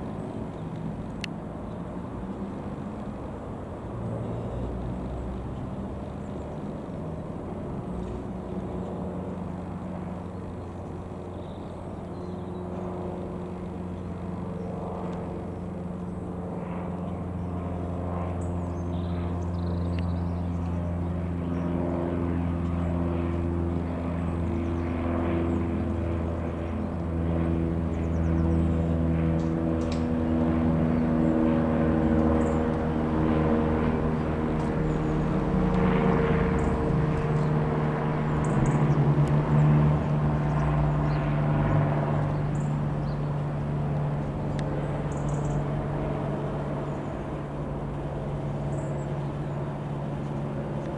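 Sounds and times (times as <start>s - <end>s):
light aircraft engine droning: 0.0s - 50.9s.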